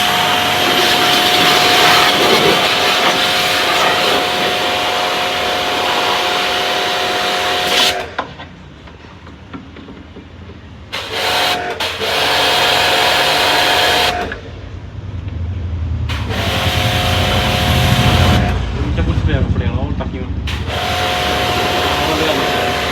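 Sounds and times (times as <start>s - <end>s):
water jet hiss: 0.0s - 8.2s
pressure washer motor whine: 0.0s - 8.6s, 10.9s - 14.9s, 16.1s - 22.9s
low hum: 14.3s - 22.5s.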